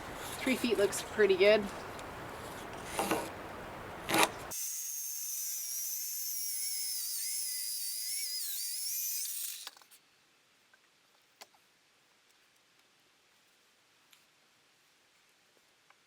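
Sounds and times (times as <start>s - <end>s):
power tool motor whining: 4.1s - 9.8s.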